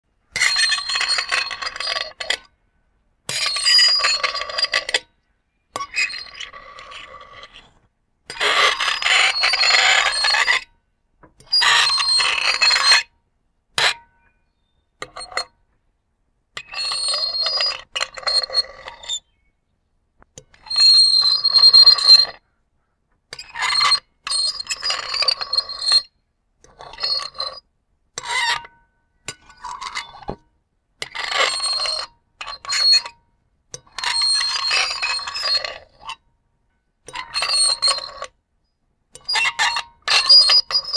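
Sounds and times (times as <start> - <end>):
fork scraping a ceramic plate: 0.3 - 2.4, 26.7 - 27.6, 31.0 - 33.1, 33.8 - 36.2, 37.1 - 38.3, 39.2 - 40.9.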